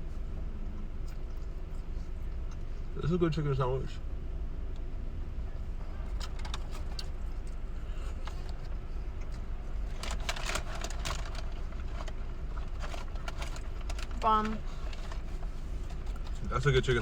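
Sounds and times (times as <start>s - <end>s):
steady low rumble: 0.0s - 17.0s
rustling and clicking: 8.2s - 16.5s.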